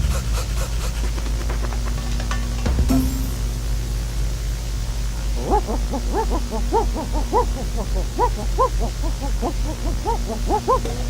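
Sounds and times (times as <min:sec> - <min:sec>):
low electrical hum: 0:00.0 - 0:11.0
dog barking rapidly: 0:05.4 - 0:11.0.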